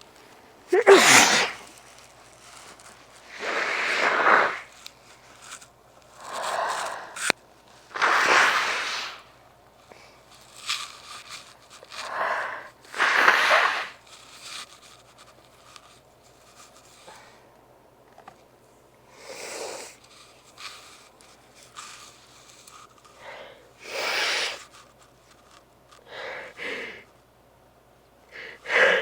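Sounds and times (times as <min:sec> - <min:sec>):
person sneezing: 0:00.7 - 0:01.7, 0:12.9 - 0:14.0.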